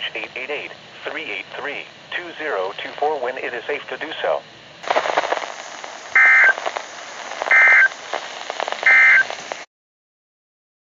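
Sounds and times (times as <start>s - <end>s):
hiss and crackle: 0.0s - 9.7s
digital data tone bursts: 6.1s - 6.6s, 7.4s - 8.0s, 8.8s - 9.4s.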